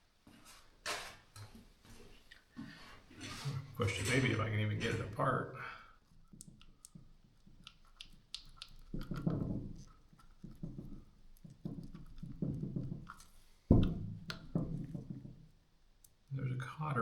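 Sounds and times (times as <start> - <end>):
light clicks and taps: 6.0 - 16.4.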